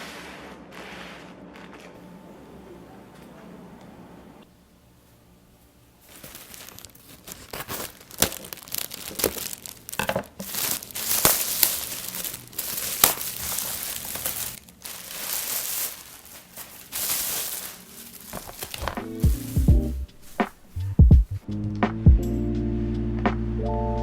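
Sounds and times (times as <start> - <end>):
packaging crinkling and tearing: 6.0 - 20.8.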